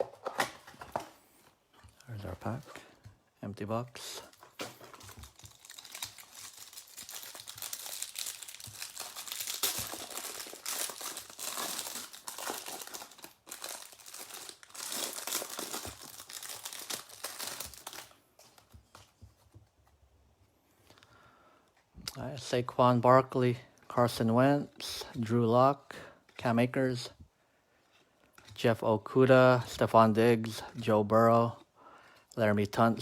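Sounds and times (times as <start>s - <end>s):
plastic wrapper tearing and crinkling: 4.2s - 18.2s.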